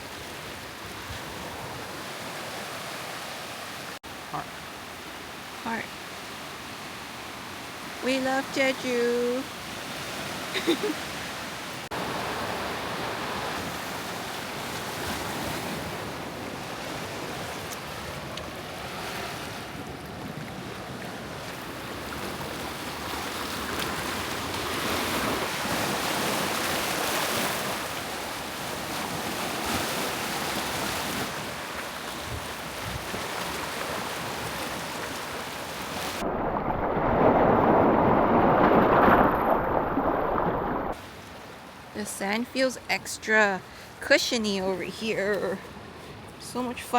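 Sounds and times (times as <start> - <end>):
small waves washing on sand: 0.0 - 42.8
wind noise on microphone: 32.2 - 41.0.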